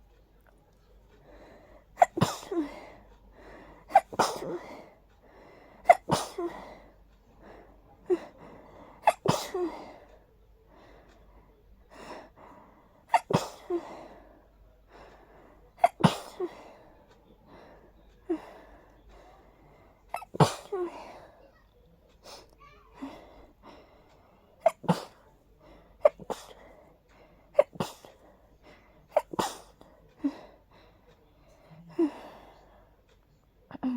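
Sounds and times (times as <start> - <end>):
person breathing: 2.7 - 3.9
person sneezing: 3.9 - 4.8, 9.0 - 9.8, 13.1 - 13.9, 15.8 - 16.6, 24.6 - 25.2, 26.0 - 26.6.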